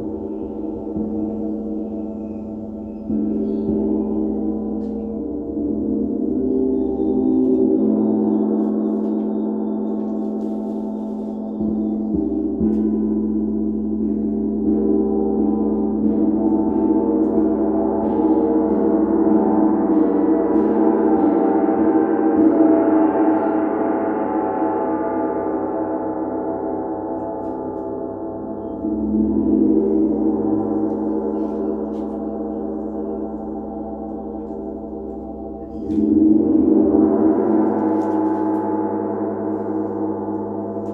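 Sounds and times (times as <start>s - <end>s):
gong ringing: 0.0s - 22.5s, 25.0s - 40.9s.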